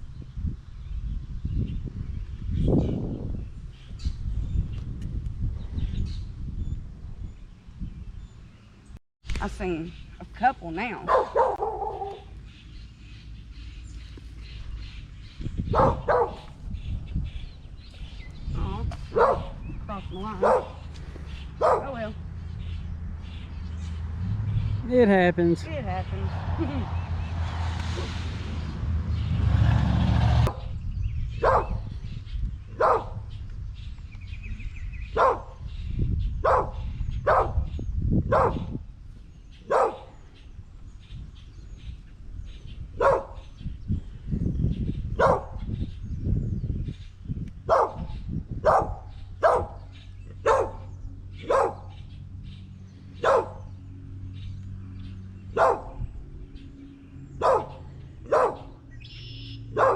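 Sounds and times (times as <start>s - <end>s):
dogs barking: 11.0s - 12.4s, 15.6s - 16.6s, 19.1s - 22.2s, 31.4s - 32.0s, 32.7s - 33.3s, 35.1s - 35.7s, 36.4s - 38.8s, 39.6s - 40.2s, 42.9s - 43.5s, 45.1s - 45.7s, 47.6s - 52.2s, 53.1s - 53.8s, 55.5s - 56.2s, 57.3s - 58.9s, 59.6s - 59.9s
loud rush of noise: 26.1s - 30.7s.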